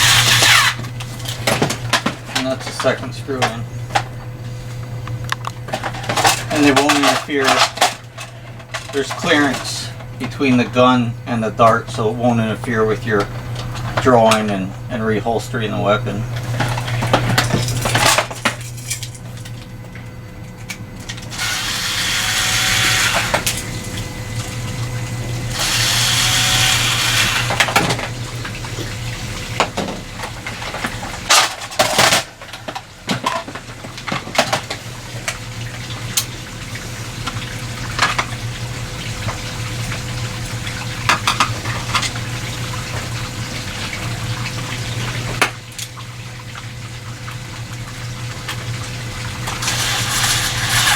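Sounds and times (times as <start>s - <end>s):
steady low hum: 0.0s - 50.9s.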